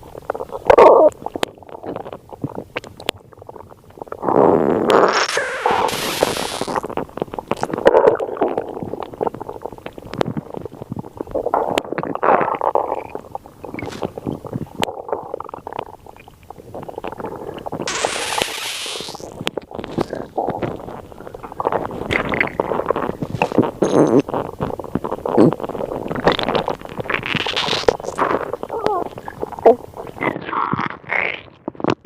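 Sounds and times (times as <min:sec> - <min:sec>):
stomach growling and gurgling: 0:00.0 - 0:32.0
short hissing rushes: 0:05.1 - 0:06.8, 0:17.9 - 0:19.3.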